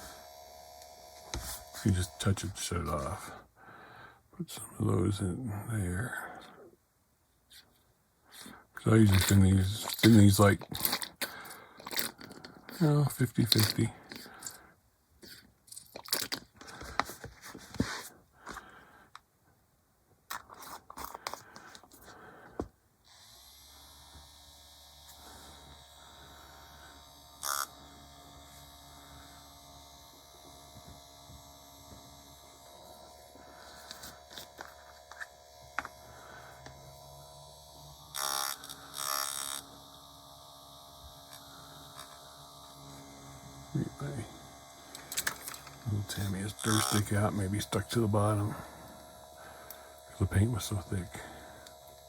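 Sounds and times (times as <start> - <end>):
electric paint mixer humming: 0.0 - 3.4, 20.6 - 52.0.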